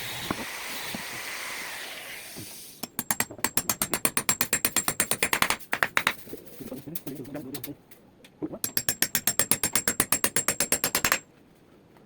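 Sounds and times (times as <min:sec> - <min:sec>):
tool ratcheting clicks: 0:08.7 - 0:11.2.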